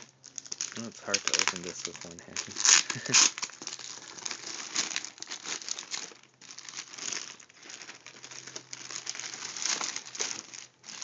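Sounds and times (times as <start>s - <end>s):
packaging crinkling and tearing: 0.0s - 11.0s.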